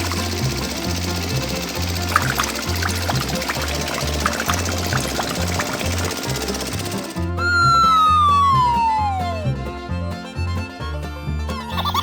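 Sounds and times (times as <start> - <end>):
upbeat background music: 0.0 - 9.8
falling pitch glide: 5.4 - 9.9.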